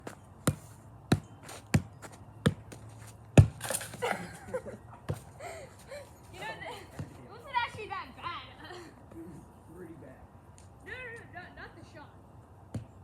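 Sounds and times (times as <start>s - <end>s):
ball bouncing: 0.0s - 4.0s, 12.7s - 13.0s.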